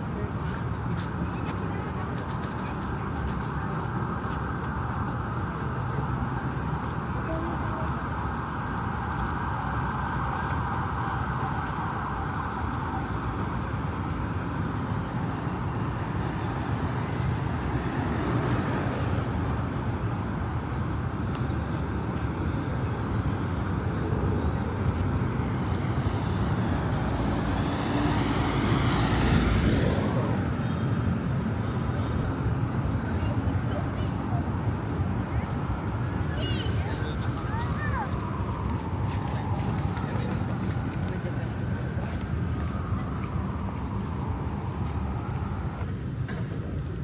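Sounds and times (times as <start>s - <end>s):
road traffic noise: 0.0s - 47.0s
vehicles passing close by: 0.0s - 47.0s.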